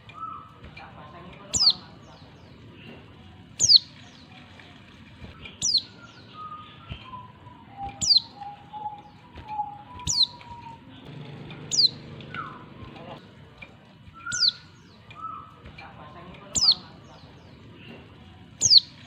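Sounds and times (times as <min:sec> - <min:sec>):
faint whistled bird notes: 0:00.0 - 0:00.6, 0:05.3 - 0:11.0, 0:11.6 - 0:13.0, 0:14.1 - 0:15.6, 0:18.6 - 0:19.0.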